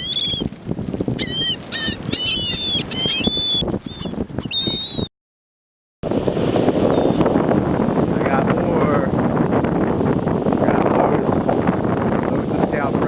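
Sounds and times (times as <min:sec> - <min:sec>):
gulls calling: 0:00.0 - 0:05.1
wind rumbling on microphone: 0:00.0 - 0:05.1, 0:06.0 - 0:13.0.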